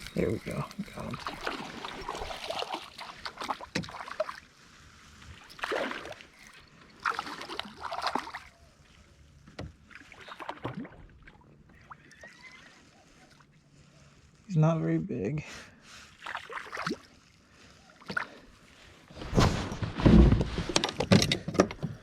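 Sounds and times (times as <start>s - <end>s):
water splashing: 0.0s - 8.6s, 9.8s - 12.6s, 16.2s - 17.3s.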